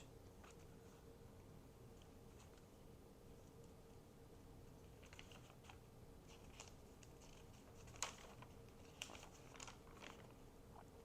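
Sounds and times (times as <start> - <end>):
paper pages rustling and ticking: 2.0 - 2.7, 4.8 - 10.5.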